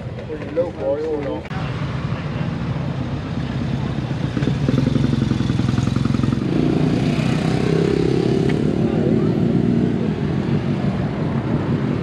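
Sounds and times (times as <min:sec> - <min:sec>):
motorcycle engine running: 0:03.3 - 0:10.6.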